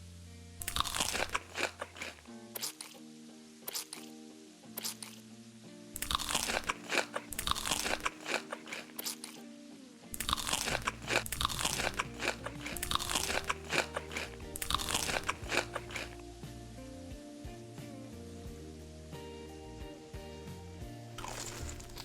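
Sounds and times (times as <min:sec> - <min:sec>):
crunchy chewing: 0:00.6 - 0:03.0, 0:03.6 - 0:04.1, 0:04.8 - 0:05.2, 0:06.0 - 0:09.4, 0:10.2 - 0:16.2, 0:21.2 - 0:22.0.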